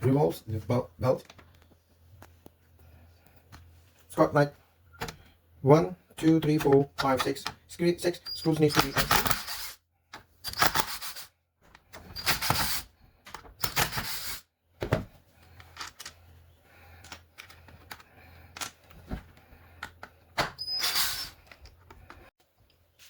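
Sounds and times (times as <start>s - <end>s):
screws scraping and rattling: 8.3s - 9.8s, 10.4s - 14.4s, 20.6s - 22.3s.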